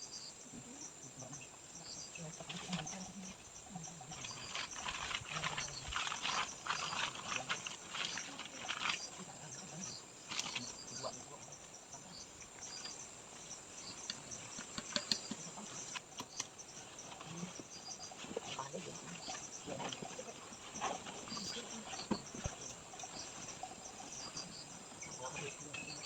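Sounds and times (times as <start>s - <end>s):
insects chirping: 0.0s - 26.0s
crackles and rustles: 1.2s - 26.0s
sharp clicks: 14.0s - 16.6s.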